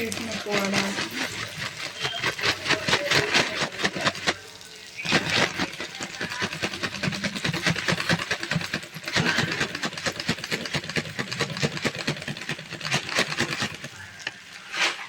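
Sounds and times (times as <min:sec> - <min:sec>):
spoon scraping a frying pan: 0:12.9 - 0:15.0.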